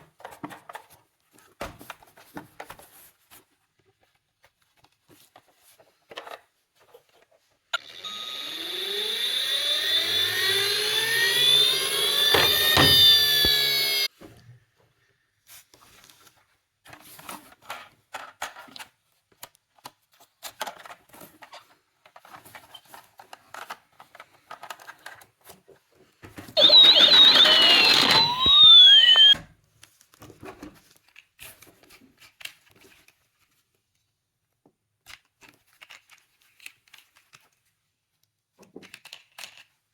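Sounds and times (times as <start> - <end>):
toy siren wailing: 7.8 - 14.1, 26.6 - 29.4
toys clicking and rattling: 26.6 - 29.4, 38.8 - 39.8.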